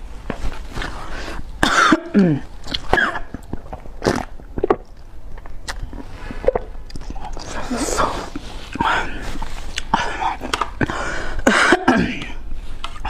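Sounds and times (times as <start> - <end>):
woman coughing: 1.6 - 3.3, 11.4 - 12.4
eating clicks and mouth sounds: 2.2 - 7.6, 8.3 - 11.0
strained vocal sound: 5.9 - 11.3.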